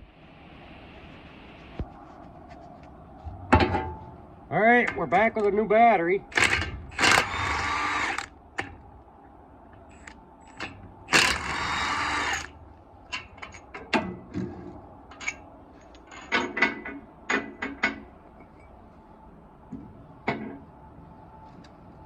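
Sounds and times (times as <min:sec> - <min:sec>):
cordless power tool running: 0:06.4 - 0:08.3, 0:11.1 - 0:12.5
sharp metallic clicks and knocks: 0:15.1 - 0:18.1.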